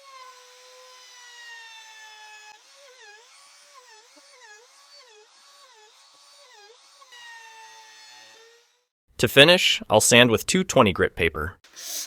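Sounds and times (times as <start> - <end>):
router bit cutting wood: 0.0 - 8.9
router motor whining: 0.0 - 8.9.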